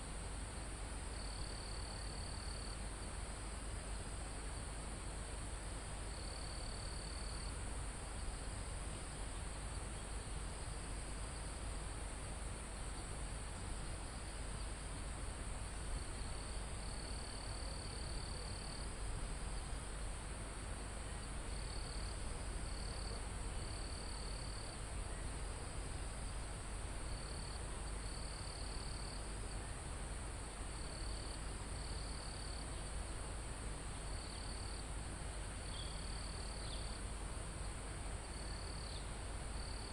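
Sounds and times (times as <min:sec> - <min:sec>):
steady hiss: 0:00.0 - 0:39.9
low insect trill: 0:01.1 - 0:04.1, 0:06.0 - 0:11.8, 0:12.7 - 0:19.9, 0:20.7 - 0:29.8, 0:30.7 - 0:39.9
insects chirring: 0:21.1 - 0:26.3, 0:30.7 - 0:32.8, 0:34.0 - 0:34.9, 0:35.6 - 0:37.0, 0:38.2 - 0:39.9.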